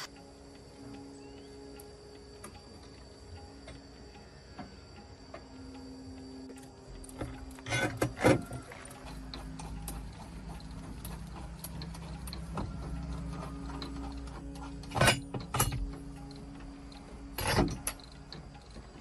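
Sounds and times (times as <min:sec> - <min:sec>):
light clicks and ticks: 0:00.0 - 0:19.0
steady low hum: 0:00.0 - 0:19.0
metal clanks: 0:07.1 - 0:19.0.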